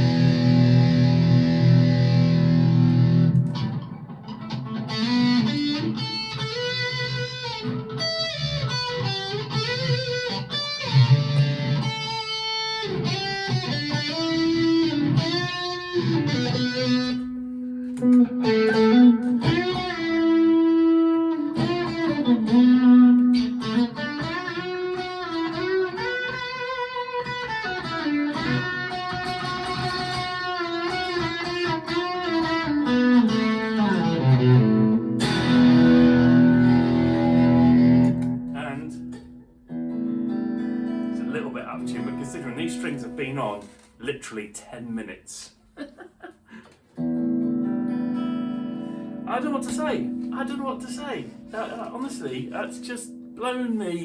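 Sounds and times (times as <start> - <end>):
distorted electric guitar: 0.0 - 44.0, 46.5 - 54.0.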